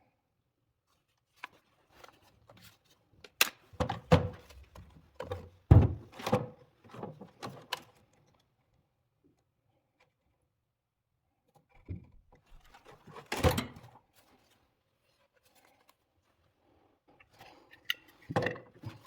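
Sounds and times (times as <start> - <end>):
hard objects knocking and thudding: 5.3 - 6.4.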